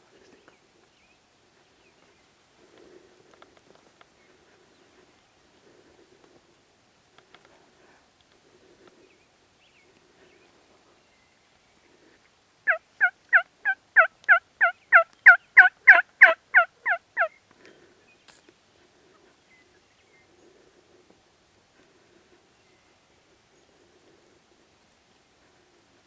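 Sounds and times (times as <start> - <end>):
turkey yelps: 12.7 - 17.3.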